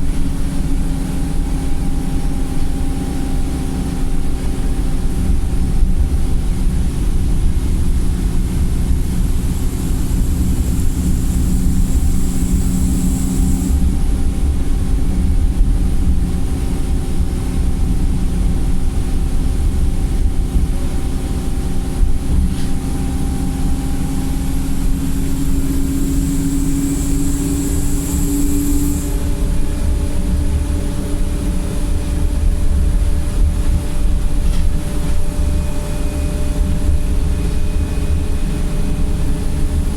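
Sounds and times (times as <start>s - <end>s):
bus diesel engine droning: 0.0s - 39.9s
high whine: 0.0s - 39.9s.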